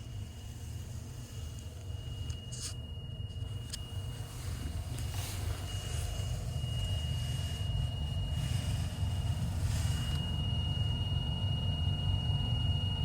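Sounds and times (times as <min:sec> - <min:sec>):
air conditioning low rumble: 0:00.0 - 0:13.0
high-pitched whine: 0:00.0 - 0:13.0.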